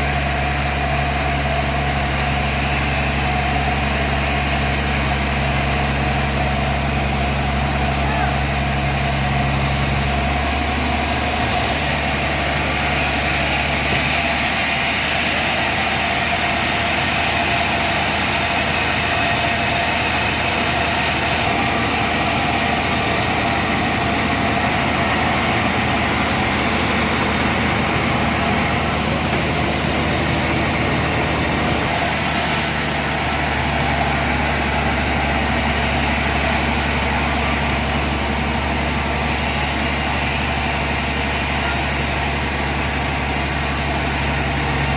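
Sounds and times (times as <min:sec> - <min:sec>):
sawmill saw and engine running: 0:00.0 - 0:44.9
high hiss: 0:11.8 - 0:13.9.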